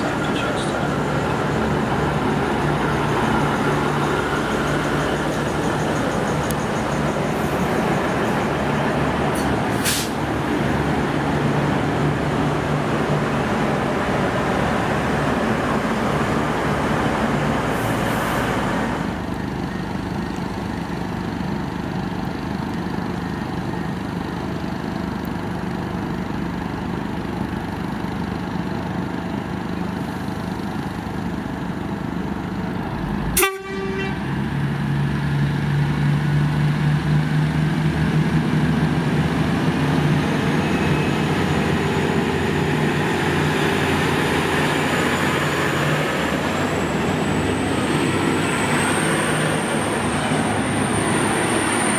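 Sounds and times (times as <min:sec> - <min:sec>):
diesel train engine droning: 0:00.0 - 0:51.9
rail noise: 0:00.0 - 0:51.9.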